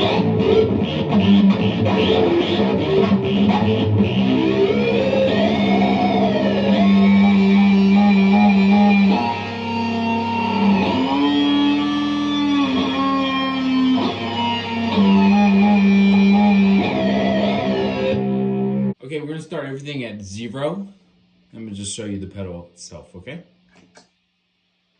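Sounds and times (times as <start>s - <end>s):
electric guitar with synth pedal: 0.0s - 19.0s.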